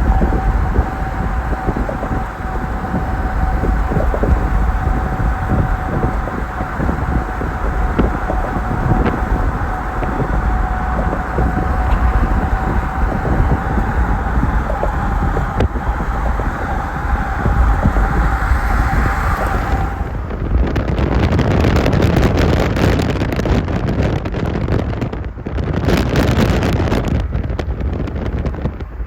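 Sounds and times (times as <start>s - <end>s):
steady hum: 0.0s - 23.1s
car road noise: 0.0s - 29.0s
wind buffeting microphone: 0.0s - 29.0s.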